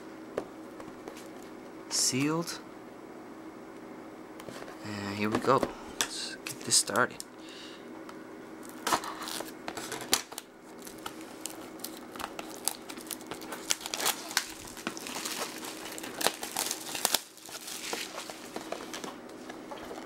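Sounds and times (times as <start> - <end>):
plastic shrink wrap crinkling: 8.6 - 20.0.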